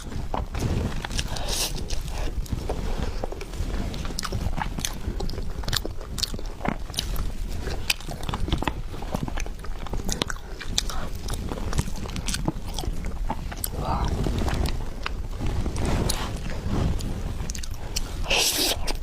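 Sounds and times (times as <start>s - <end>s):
chewing and biting cake: 0.0s - 19.0s.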